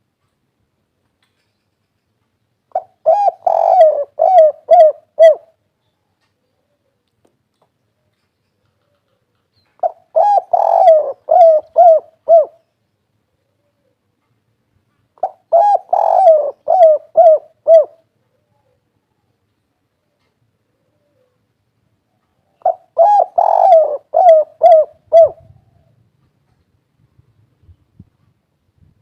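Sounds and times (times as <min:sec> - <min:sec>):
dove cooing: 0:02.7 - 0:05.6, 0:08.8 - 0:12.6, 0:15.2 - 0:19.0, 0:20.1 - 0:21.5, 0:22.4 - 0:26.0.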